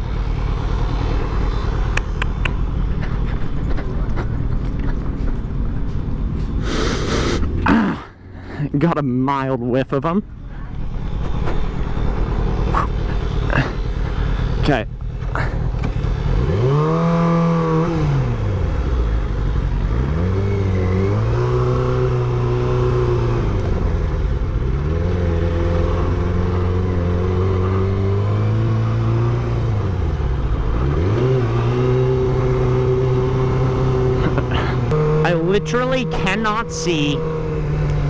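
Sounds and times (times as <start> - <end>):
motorcycle engine revving: 10.8 - 38.0.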